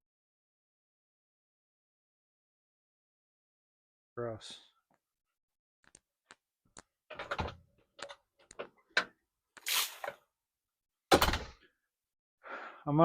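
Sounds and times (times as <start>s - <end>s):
short hiss: 9.6s - 10.1s.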